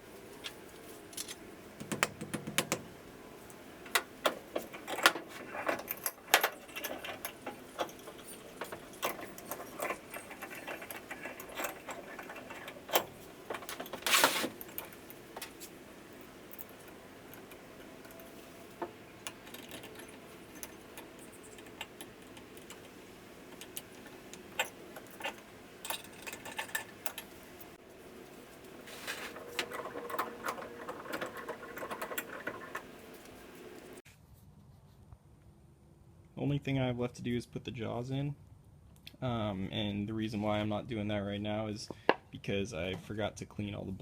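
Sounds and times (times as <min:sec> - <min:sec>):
faint steady hum: 0:00.0 - 0:34.0
metal parts clicking and rattling: 0:03.8 - 0:27.8, 0:28.6 - 0:34.0.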